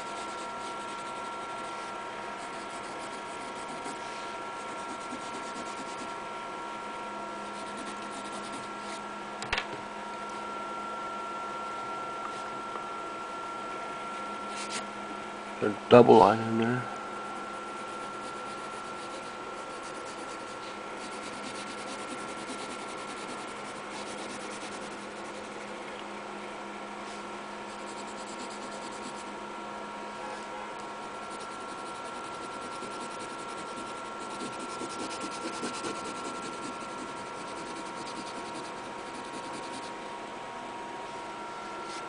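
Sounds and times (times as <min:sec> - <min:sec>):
pencil scratching on paper: 0:00.0 - 0:01.8, 0:02.4 - 0:06.1, 0:07.5 - 0:09.0, 0:14.6 - 0:14.8, 0:17.6 - 0:25.7, 0:27.7 - 0:29.3, 0:31.2 - 0:39.9
electrical hum: 0:00.0 - 0:42.0.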